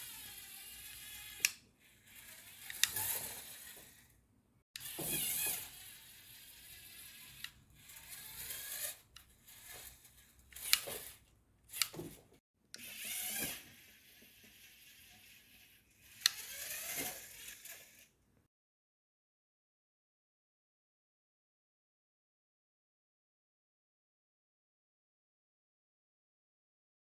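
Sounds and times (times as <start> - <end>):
small electric motors whirring: 0.0 - 4.2, 4.8 - 18.2
sharp plastic clicks: 2.6 - 3.8.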